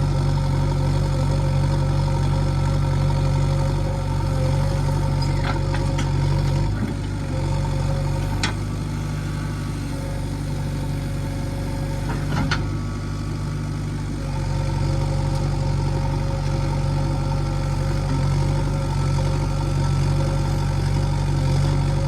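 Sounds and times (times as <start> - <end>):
heavy diesel engine running: 0.0 - 22.0.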